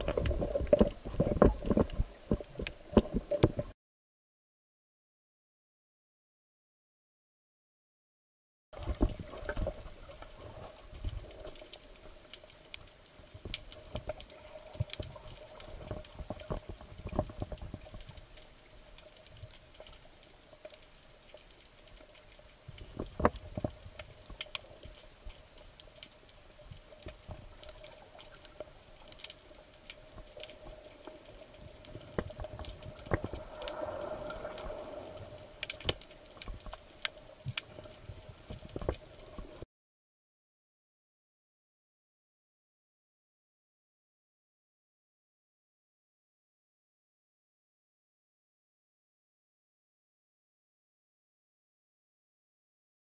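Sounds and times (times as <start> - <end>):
underwater crackling clicks: 0.0 - 3.7, 8.8 - 39.6.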